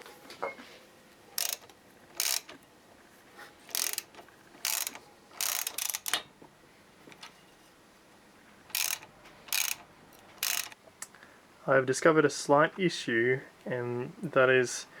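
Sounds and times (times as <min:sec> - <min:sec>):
ratchet wrench clicking: 0:01.4 - 0:02.6, 0:03.7 - 0:06.2, 0:08.7 - 0:10.8.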